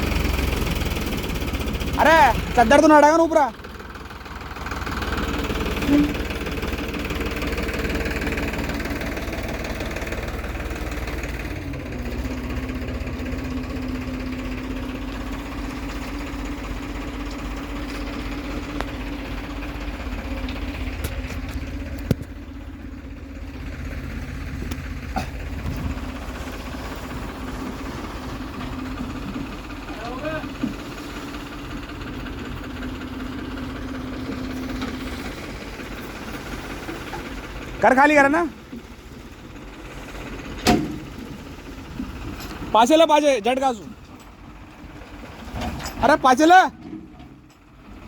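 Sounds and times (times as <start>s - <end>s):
heavy diesel engine running: 0.0s - 48.0s.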